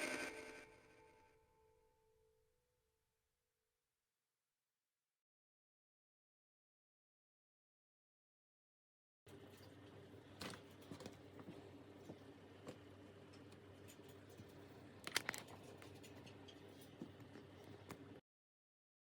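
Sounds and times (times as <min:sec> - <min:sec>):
small objects clicking and tapping: 0:13.3 - 0:18.1.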